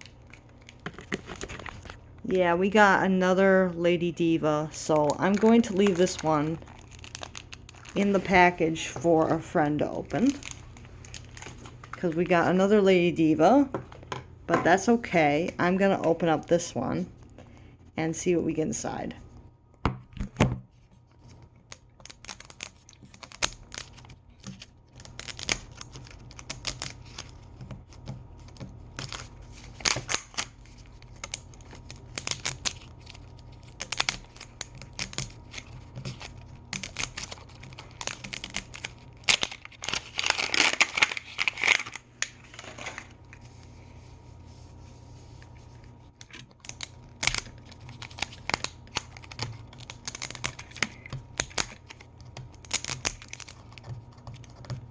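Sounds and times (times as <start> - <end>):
plastic packaging crinkling: 0.0 - 2.1, 4.7 - 12.5, 21.0 - 54.9
plastic packaging tearing: 5.0 - 8.4, 21.7 - 43.4, 46.1 - 54.7.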